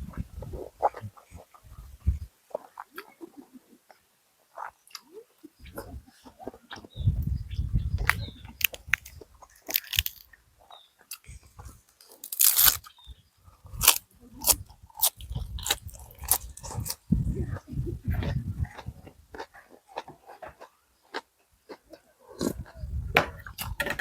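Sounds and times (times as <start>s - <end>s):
wet chewing and mouth clicks: 0.0s - 23.8s
slurping soup: 22.3s - 23.8s.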